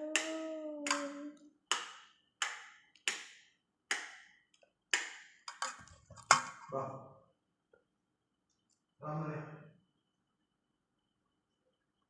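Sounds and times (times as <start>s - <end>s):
child's voice holding a note: 0.0s - 1.4s
child clapping hands: 0.0s - 3.3s.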